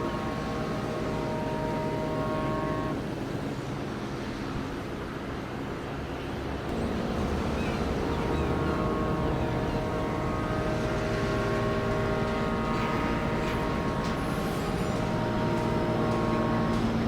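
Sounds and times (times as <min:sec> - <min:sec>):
ship horn playing a tune: 0:00.0 - 0:03.2, 0:06.7 - 0:17.0.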